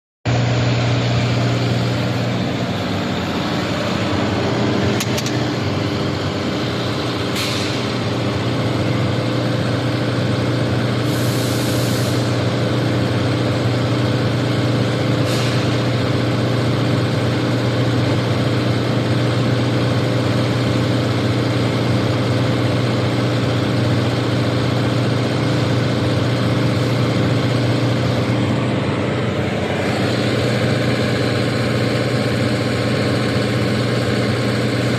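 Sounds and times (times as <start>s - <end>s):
diesel generator droning: 0.3s - 34.9s
sharp hisses: 7.3s - 7.9s, 11.1s - 12.3s.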